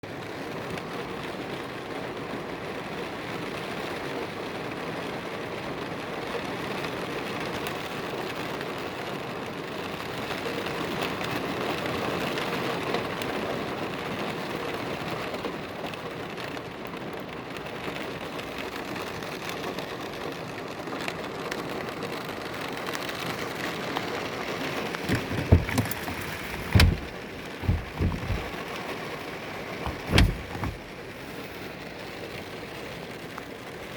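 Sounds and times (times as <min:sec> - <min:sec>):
rain falling steadily: 0:00.0 - 0:29.9, 0:30.7 - 0:33.9
short low thumps: 0:25.1 - 0:28.5, 0:29.8 - 0:30.9.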